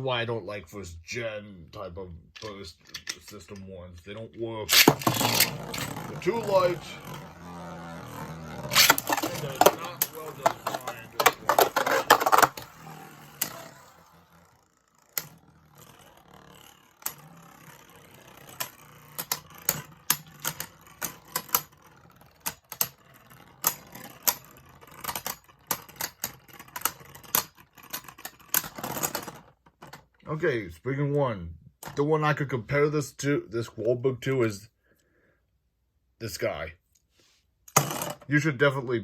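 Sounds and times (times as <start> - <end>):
spinning tops clacking: 4.7 - 29.3
faint steady whir: 4.7 - 29.6.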